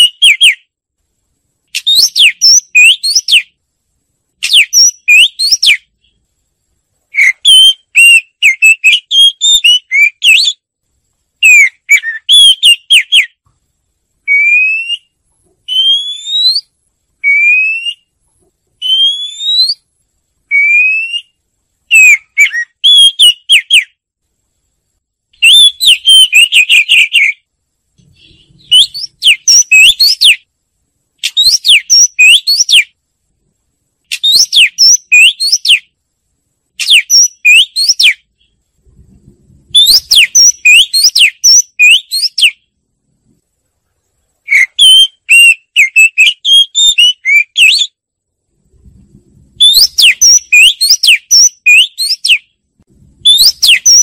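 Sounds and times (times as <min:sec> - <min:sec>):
bird whistles rising: 0:00.0 - 0:00.6, 0:01.8 - 0:03.5, 0:04.4 - 0:05.9, 0:07.2 - 0:10.6, 0:11.4 - 0:13.4, 0:14.3 - 0:18.1, 0:18.8 - 0:19.8, 0:20.5 - 0:23.9, 0:25.4 - 0:27.4, 0:28.1 - 0:30.4, 0:31.2 - 0:32.9, 0:34.1 - 0:35.9, 0:36.8 - 0:38.5, 0:39.7 - 0:42.6, 0:44.5 - 0:48.0, 0:49.6 - 0:52.5, 0:53.2 - 0:54.0
bird singing warbled phrases: 0:00.0 - 0:00.7, 0:01.7 - 0:03.6, 0:04.4 - 0:06.2, 0:07.1 - 0:10.7, 0:11.4 - 0:13.4, 0:14.2 - 0:18.1, 0:18.8 - 0:24.0, 0:25.4 - 0:30.5, 0:31.2 - 0:33.0, 0:34.1 - 0:36.0, 0:36.8 - 0:38.6, 0:39.7 - 0:42.7, 0:44.4 - 0:48.0, 0:49.6 - 0:52.6, 0:53.2 - 0:54.0.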